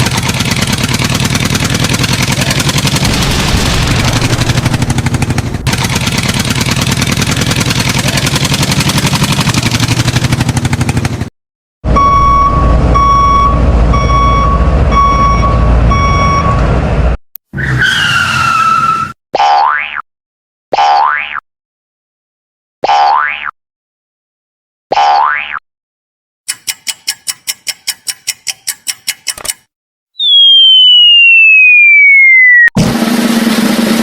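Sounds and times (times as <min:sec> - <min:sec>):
heavy vehicle engine rumble: 0:00.2 - 0:08.7, 0:11.9 - 0:17.2
reversing alarm beeping: 0:11.9 - 0:16.7
falling cartoon glide: 0:30.2 - 0:32.8.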